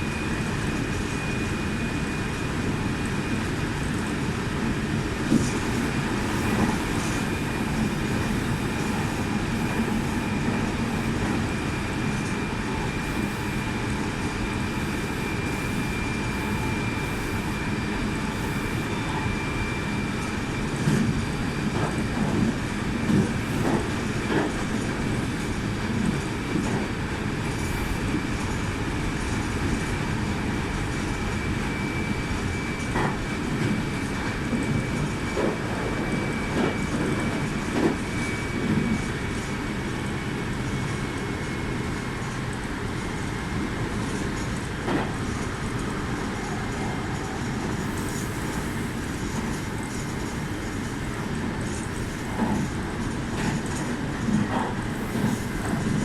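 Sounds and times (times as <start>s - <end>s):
thin high whine: 5.1s - 21.6s.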